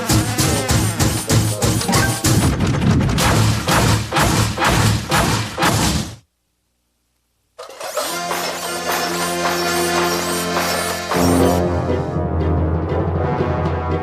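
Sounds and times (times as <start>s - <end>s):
crashing whacking hits: 0.0s - 6.2s
cartoon music: 0.1s - 2.5s.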